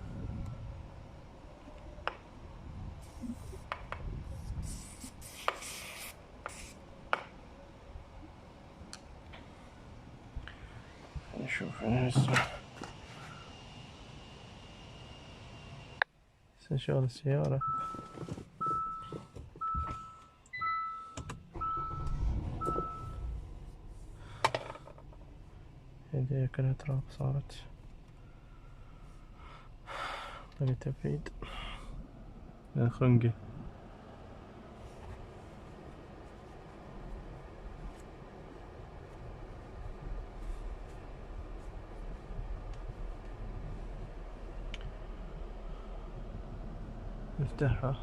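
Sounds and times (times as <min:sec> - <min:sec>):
low electric motor hum: 0:00.0 - 0:04.6, 0:06.2 - 0:16.0, 0:25.0 - 0:48.0
short hissing spray bursts: 0:04.6 - 0:06.8
car warning chime: 0:17.6 - 0:23.4
higher beep: 0:18.6 - 0:23.2.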